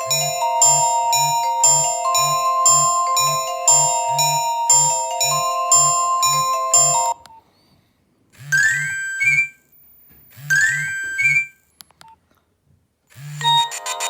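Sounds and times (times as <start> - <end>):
mobile phone ringtone: 0.0 - 7.2, 13.2 - 14.0.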